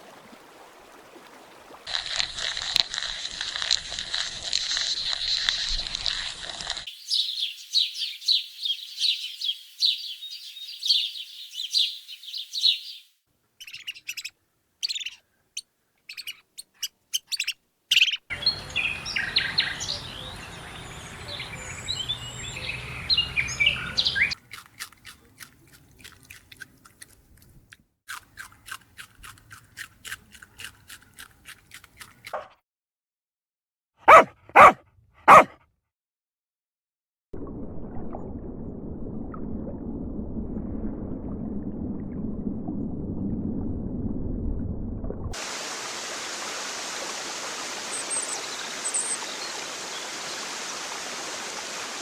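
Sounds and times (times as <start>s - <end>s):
birds chirping: 6.9s - 24.4s, 47.9s - 50.6s
steady outdoor hiss: 16.4s - 24.4s, 45.4s - 52.0s.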